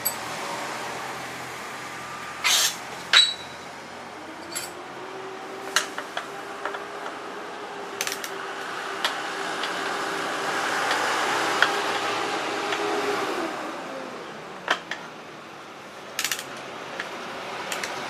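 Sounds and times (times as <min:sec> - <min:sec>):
metal tools clinking: 0:00.0 - 0:00.3, 0:02.4 - 0:03.7, 0:04.4 - 0:04.8.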